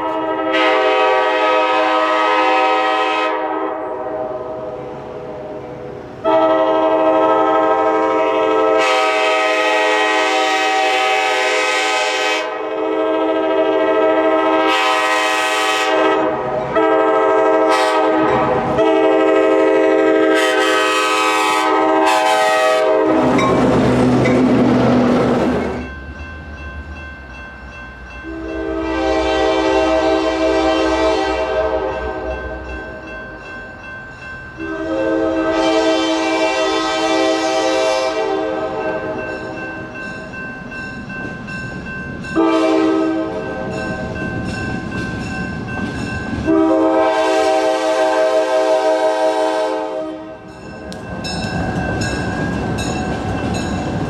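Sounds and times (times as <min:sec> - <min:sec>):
locomotive air horn blasts: 0:00.0 - 0:04.7, 0:06.2 - 0:23.4, 0:28.2 - 0:32.4, 0:34.6 - 0:39.2, 0:42.4 - 0:43.5, 0:46.4 - 0:50.4
passing train rumble: 0:00.0 - 0:54.0.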